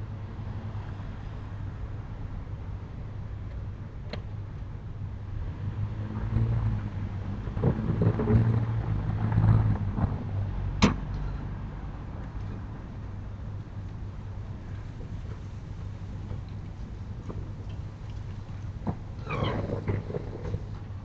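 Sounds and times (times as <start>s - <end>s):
sliding shutters rumbling rattle: 18.7s - 21.0s.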